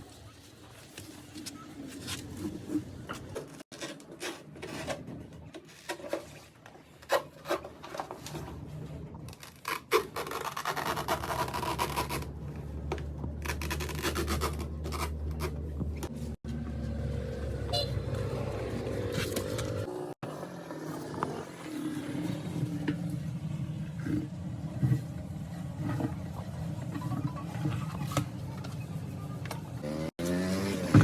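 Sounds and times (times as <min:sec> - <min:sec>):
rasping and scraping strokes: 0:09.4 - 0:16.4.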